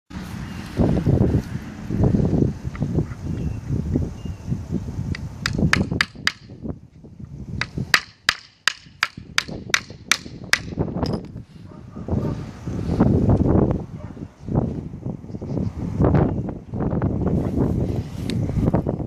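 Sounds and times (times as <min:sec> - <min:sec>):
hammer striking nail into wood: 0:05.4 - 0:06.6, 0:07.6 - 0:11.2.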